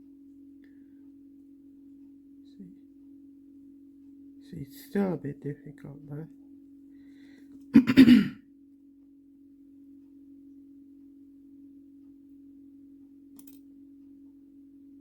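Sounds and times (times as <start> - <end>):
steady low hum: 0.0 - 15.0
woman clearing her throat: 7.8 - 8.4.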